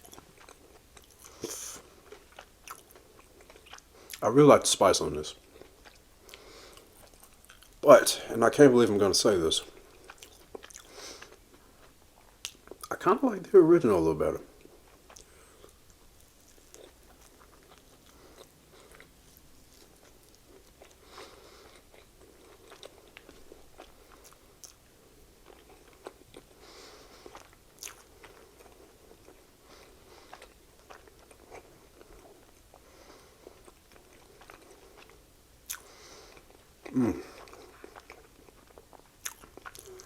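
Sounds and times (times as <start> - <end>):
chewing and biting a sandwich: 0.0 - 4.2, 5.3 - 7.8, 9.6 - 12.9, 14.5 - 40.0.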